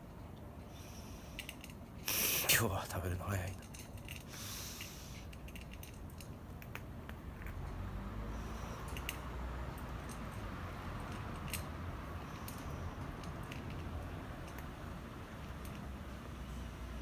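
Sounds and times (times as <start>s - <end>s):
cats crunching food: 3.3s - 7.7s.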